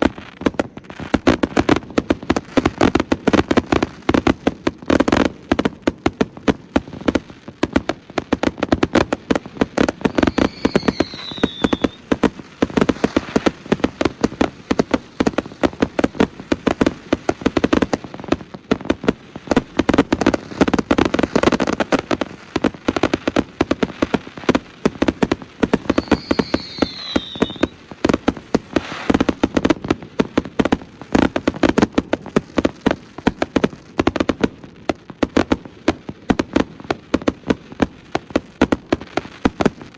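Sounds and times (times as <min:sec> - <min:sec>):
fireworks bangs and crackles: 0:00.0 - 0:39.9
short falling whistle: 0:10.2 - 0:12.0, 0:25.8 - 0:27.7.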